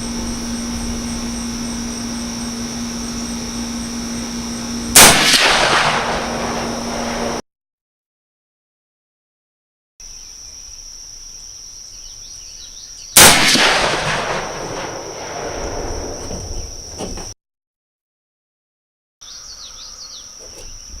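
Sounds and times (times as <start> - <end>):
insects droning: 0.0 - 7.4, 10.0 - 17.4, 19.2 - 21.0
rifle shot echoing: 4.9 - 7.4, 13.2 - 16.5.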